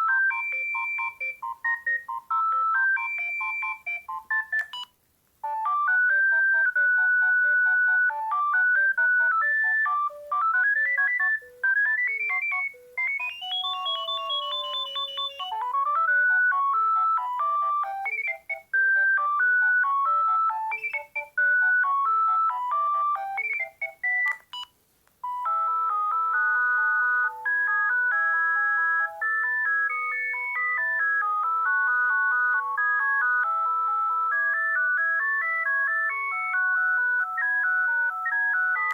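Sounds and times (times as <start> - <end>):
phone ringtone melodies: 0.0 - 38.9
click: 4.6 - 4.9, 24.2 - 25.2.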